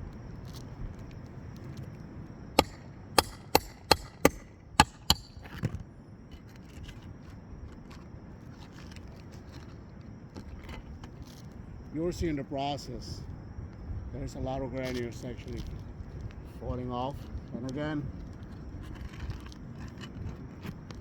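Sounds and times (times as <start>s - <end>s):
roofing tool strikes: 2.6s - 5.7s.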